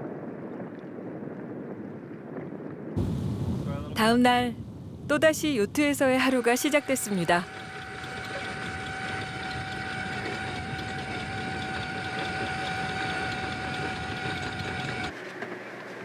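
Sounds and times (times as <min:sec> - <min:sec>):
motor whining: 0:06.8 - 0:15.1.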